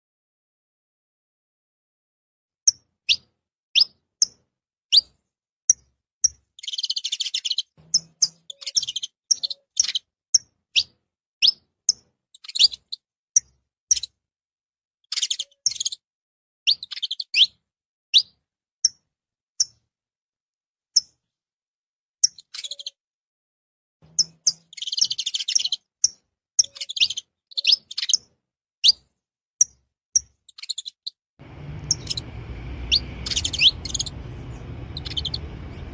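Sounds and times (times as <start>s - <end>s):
buzzy trilled bird phrases: 30.6s - 35.9s.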